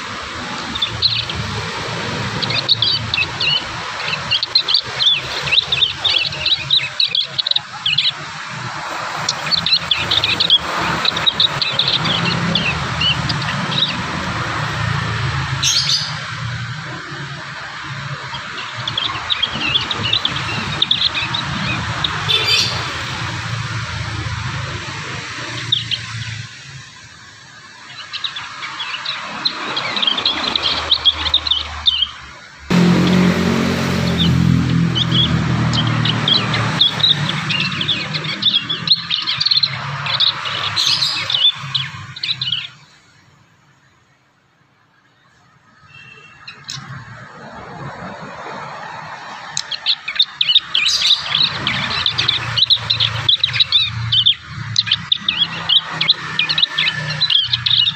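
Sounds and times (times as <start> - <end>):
young birds twittering high chirps: 0.0 - 44.2, 44.9 - 47.2, 47.8 - 57.9
low hum: 32.7 - 36.8.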